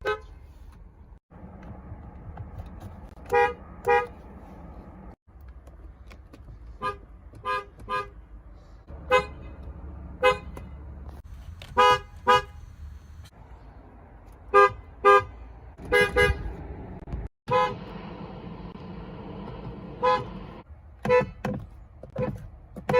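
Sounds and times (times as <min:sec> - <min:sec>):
car horn short beeps: 0:03.2 - 0:04.2, 0:10.2 - 0:10.6, 0:11.7 - 0:12.6, 0:14.6 - 0:16.5, 0:17.5 - 0:17.8, 0:20.0 - 0:20.5.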